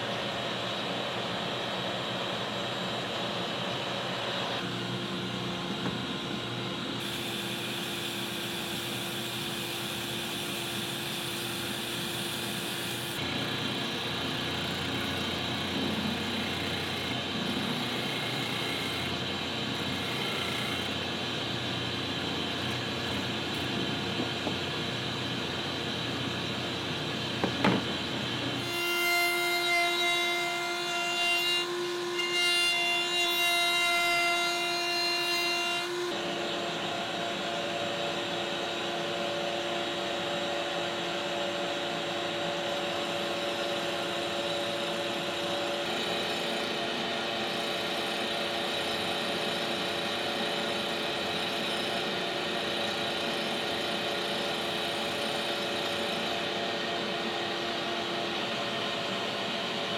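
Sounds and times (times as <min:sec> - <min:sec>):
machine high whine: 0:00.0 - 0:59.9
power tools cutting wood: 0:07.0 - 0:24.6, 0:27.4 - 0:36.6.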